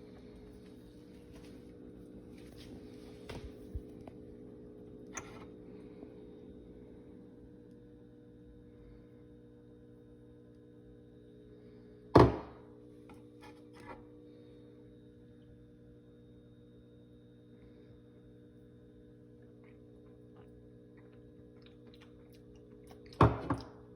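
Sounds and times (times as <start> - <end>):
espresso machine humming: 0.0 - 13.2
loud thunk: 12.2 - 12.6.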